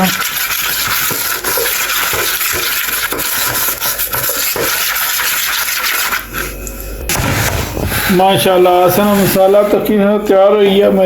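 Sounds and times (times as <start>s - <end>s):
potatoes mixed by hand in bowl: 0.0s - 6.5s.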